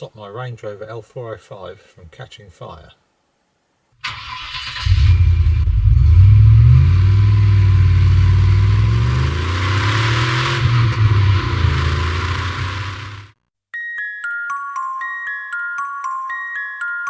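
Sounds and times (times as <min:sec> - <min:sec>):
car engine running: 0:04.8 - 0:13.4.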